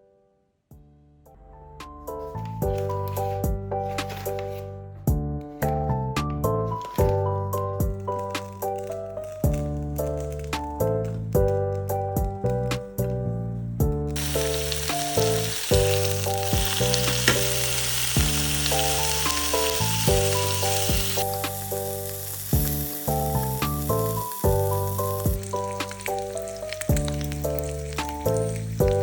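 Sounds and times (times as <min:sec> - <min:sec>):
melodic background music: 0:01.2 - 0:29.0
food sizzling in a pan: 0:14.2 - 0:29.0.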